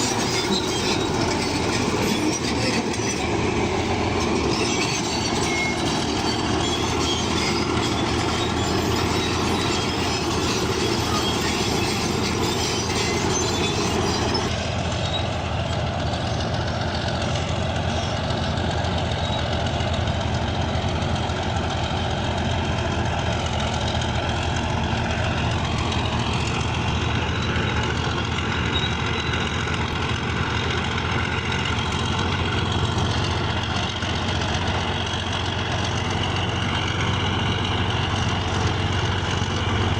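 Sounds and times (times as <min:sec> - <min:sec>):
bulldozer diesel engine running: 0:00.0 - 0:39.9
crawler tracks clattering: 0:00.0 - 0:39.9.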